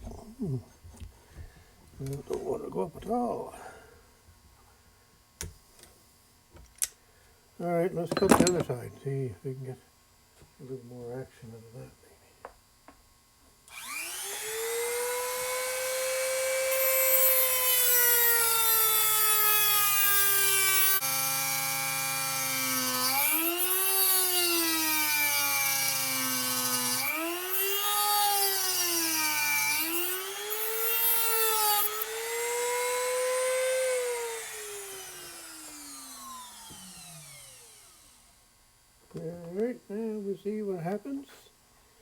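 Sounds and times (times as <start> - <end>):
power tool cutting metal: 13.7 - 38.3.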